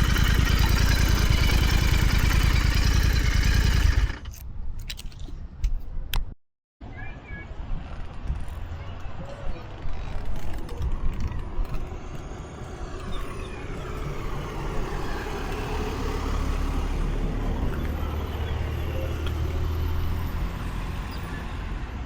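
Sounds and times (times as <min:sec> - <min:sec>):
motorcycle engine rumble: 0:00.0 - 0:04.5, 0:13.6 - 0:20.4.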